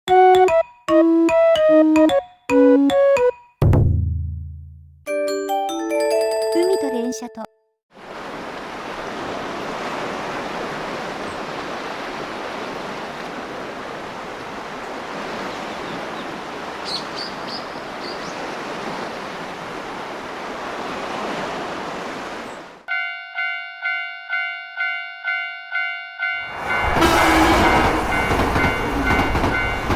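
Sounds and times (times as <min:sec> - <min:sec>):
ocean waves washing: 0:07.9 - 0:22.9.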